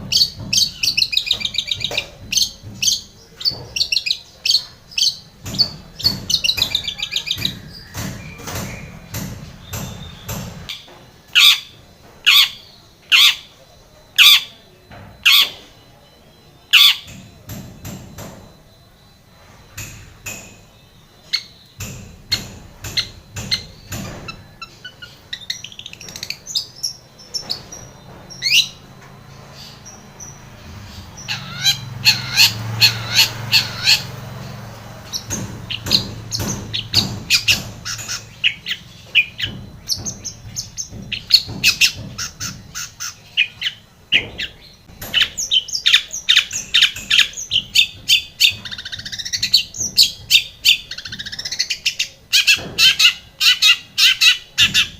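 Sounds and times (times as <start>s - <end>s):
bird chattering song: 0.0s - 54.9s.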